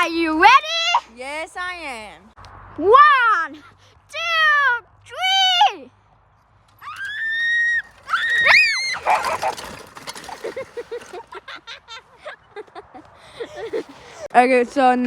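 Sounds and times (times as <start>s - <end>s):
girl screaming: 6.8s - 9.2s
girl laughing breathily: 10.9s - 14.3s.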